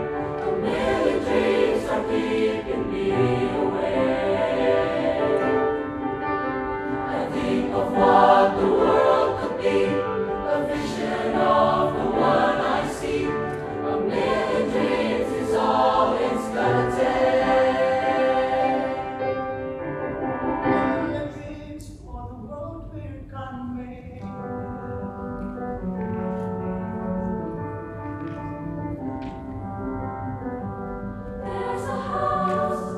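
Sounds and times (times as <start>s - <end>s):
choir singing in parts: 0.0s - 19.8s, 31.3s - 32.9s.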